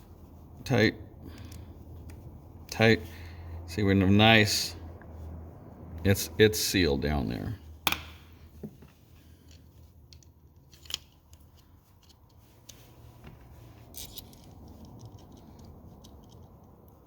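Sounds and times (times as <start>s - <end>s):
metal parts clicking and scraping: 9.1s - 13.0s, 13.6s - 17.0s.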